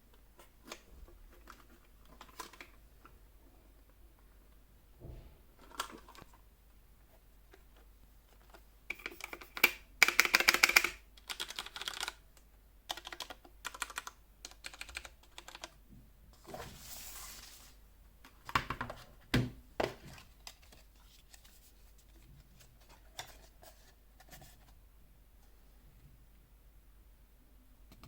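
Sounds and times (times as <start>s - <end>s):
mechanical keyboard typing: 8.9s - 12.2s, 12.9s - 15.8s
soft rustle: 16.3s - 17.8s.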